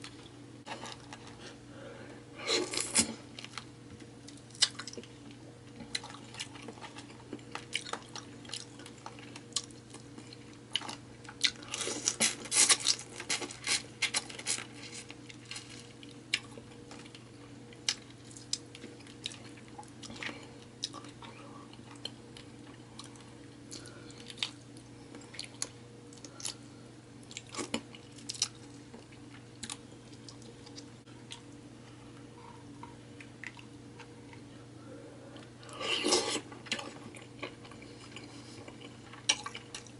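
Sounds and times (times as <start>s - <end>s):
steady low hum: 0.0s - 39.9s
chewing and mouth sounds: 5.8s - 26.6s, 27.2s - 31.6s, 32.8s - 34.5s, 35.4s - 39.9s.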